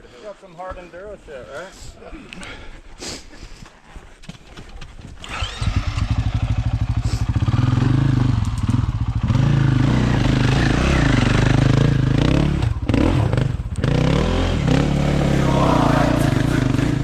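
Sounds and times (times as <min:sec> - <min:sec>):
dirt bike engine revving: 0:05.2 - 0:17.0.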